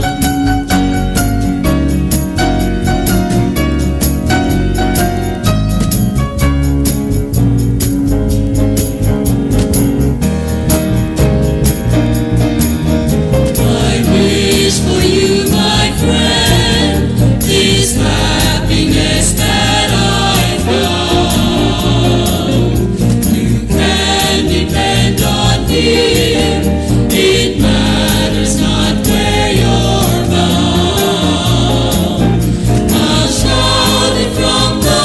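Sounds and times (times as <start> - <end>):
bass guitar: 0.0 - 35.0
drums: 0.0 - 35.0
piano: 0.0 - 35.0
mixed choir singing gospel: 13.3 - 35.0.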